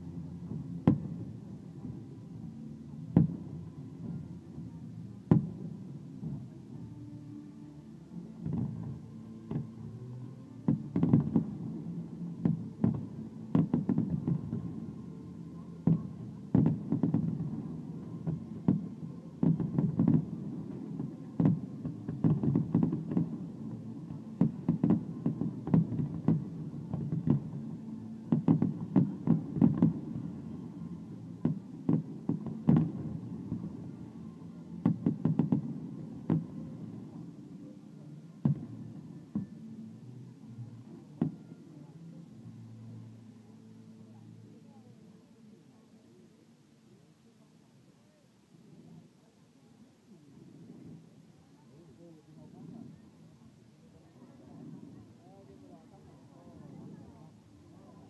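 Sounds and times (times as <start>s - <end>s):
fireworks booming: 10.7s - 11.7s, 15.8s - 27.6s, 28.3s - 30.4s, 31.4s - 33.8s, 34.8s - 37.2s
fireworks crackling: 15.8s - 27.5s, 31.2s - 34.0s.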